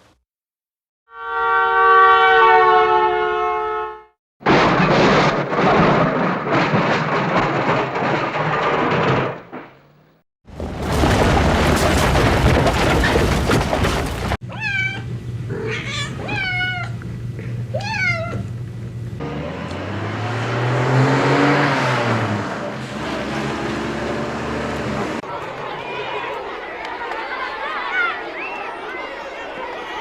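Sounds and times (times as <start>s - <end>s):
loud even noise: 4.4s - 9.8s
cat meowing: 14.5s - 17.0s, 17.7s - 18.5s.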